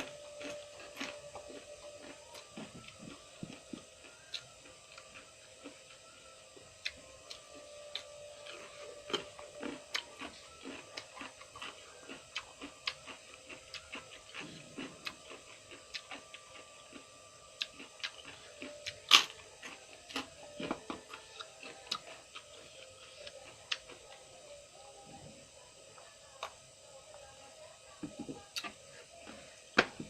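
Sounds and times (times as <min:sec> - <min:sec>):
chewing raw cucumber: 0:00.0 - 0:06.0, 0:06.8 - 0:24.4, 0:28.4 - 0:28.8.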